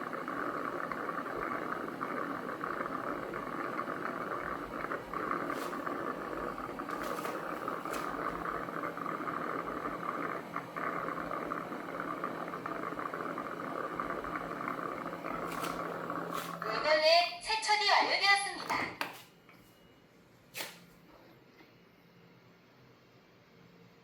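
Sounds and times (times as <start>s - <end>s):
low motor hum: 0.0s - 17.4s
spinning mops whirring with water: 0.0s - 17.5s.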